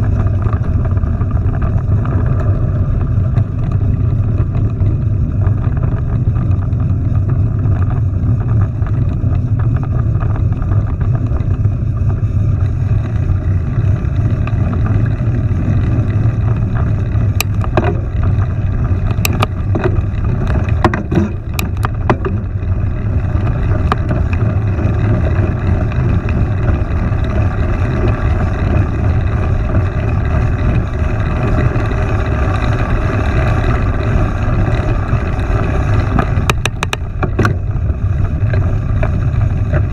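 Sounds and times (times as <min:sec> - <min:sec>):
wind buffeting microphone: 0:00.0 - 0:39.9
sharp clicks and knocks: 0:16.7 - 0:22.7, 0:36.1 - 0:37.7.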